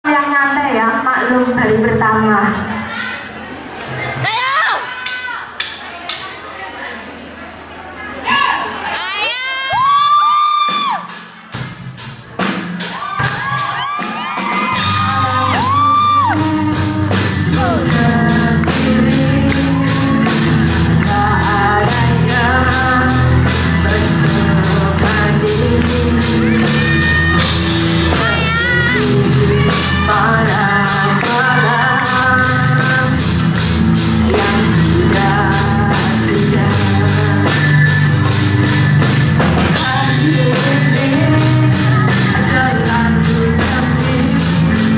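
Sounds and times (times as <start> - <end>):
people shouting and whooping: 4.0 - 5.6, 8.2 - 11.2, 12.8 - 16.5, 25.9 - 32.0
band music with singing: 9.6 - 44.9
steady drum beat: 9.8 - 44.9.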